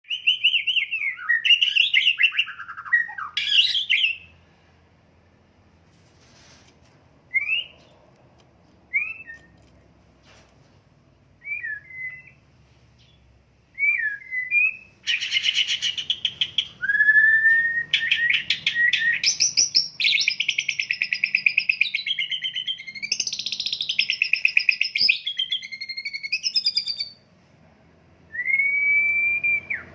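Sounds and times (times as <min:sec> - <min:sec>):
bird singing whistled phrases: 0:00.1 - 0:04.3, 0:07.3 - 0:07.9, 0:08.9 - 0:09.6, 0:11.4 - 0:12.4, 0:13.8 - 0:27.2, 0:28.3 - 0:29.9.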